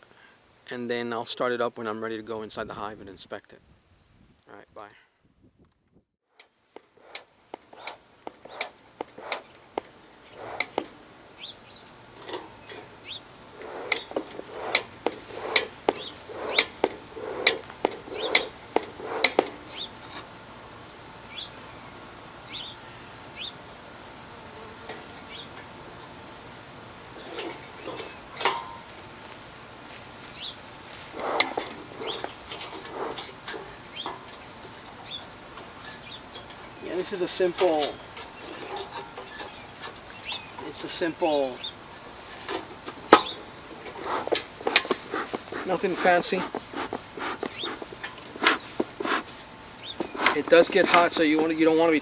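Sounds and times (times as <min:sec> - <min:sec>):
small birds chirping: 0:06.8 - 0:23.7, 0:25.2 - 0:26.1, 0:29.9 - 0:52.0.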